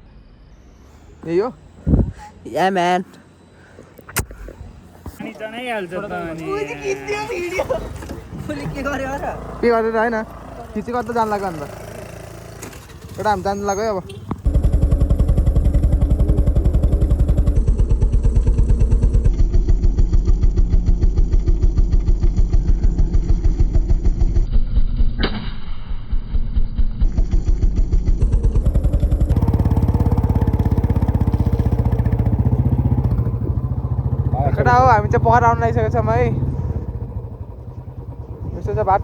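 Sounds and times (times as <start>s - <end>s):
motorcycle engine thumping: 14.1s - 39.0s
sharp engine pop: 24.9s - 29.2s.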